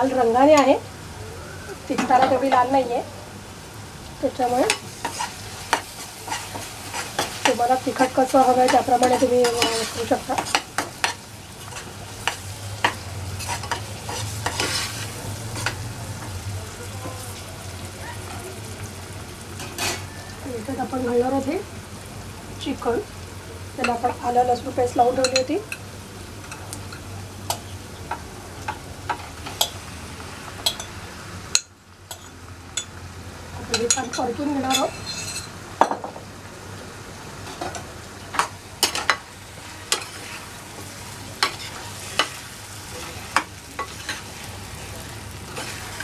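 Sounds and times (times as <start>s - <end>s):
chicken frying in a pan: 0.0s - 46.0s
paste sizzling in oil: 2.7s - 35.8s, 37.0s - 46.0s
spoon scraping a pan: 4.5s - 15.8s, 19.6s - 20.3s, 32.1s - 33.0s, 33.7s - 35.6s, 37.5s - 40.6s, 41.4s - 44.5s, 45.4s - 46.0s.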